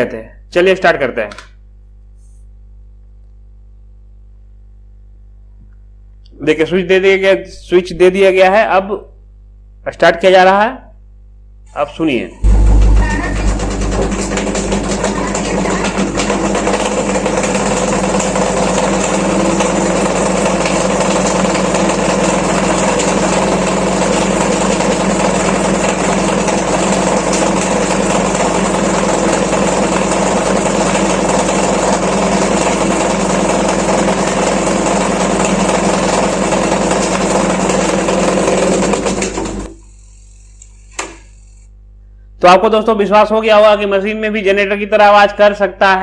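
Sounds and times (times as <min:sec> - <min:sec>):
spin-dryer tub droning: 0:12.4 - 0:41.6.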